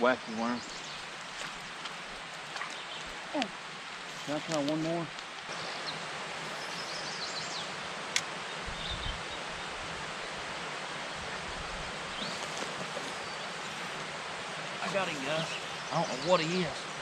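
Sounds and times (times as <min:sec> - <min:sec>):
steady outdoor hiss: 0:00.0 - 0:17.0.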